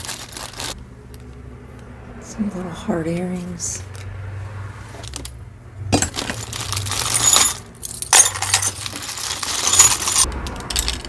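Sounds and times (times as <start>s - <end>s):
jewelry clinking and jangling: 5.9s - 11.0s.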